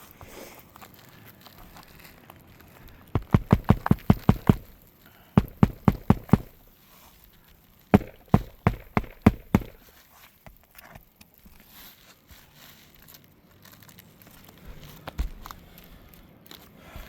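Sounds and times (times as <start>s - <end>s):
hammer driving nails: 3.1s - 4.8s, 5.4s - 6.6s, 7.9s - 9.9s.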